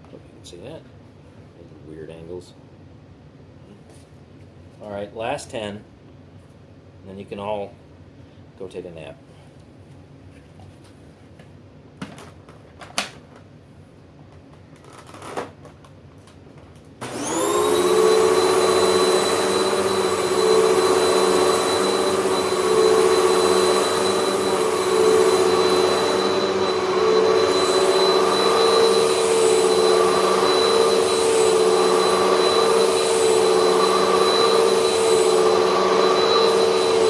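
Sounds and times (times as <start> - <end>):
vacuum cleaner motor whining: 17.0 - 37.0.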